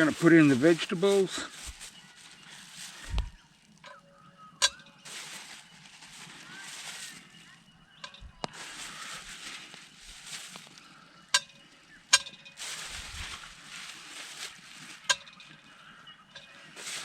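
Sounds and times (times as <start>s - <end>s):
metal clinking against pot: 11.3s - 13.5s, 14.5s - 15.7s.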